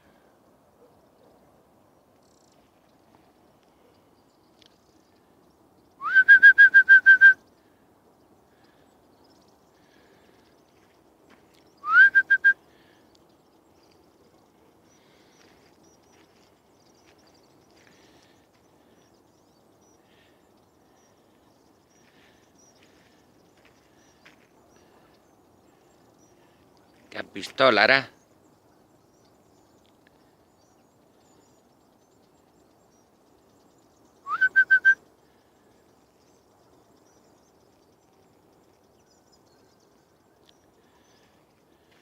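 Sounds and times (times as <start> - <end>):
whistled bird-like call: 6.0 - 7.5, 11.8 - 12.6, 34.2 - 35.1.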